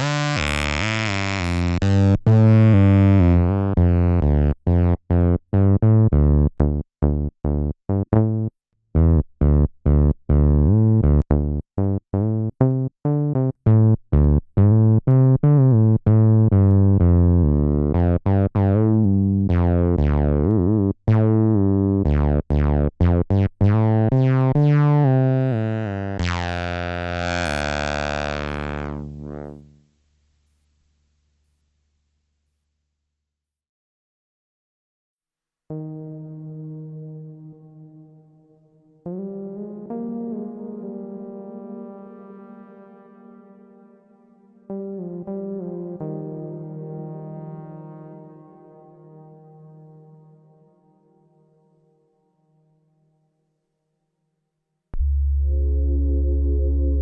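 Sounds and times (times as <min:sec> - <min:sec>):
acid synth bassline: 0:00.0 - 0:04.5, 0:24.6 - 0:29.7, 0:55.0 - 0:57.0.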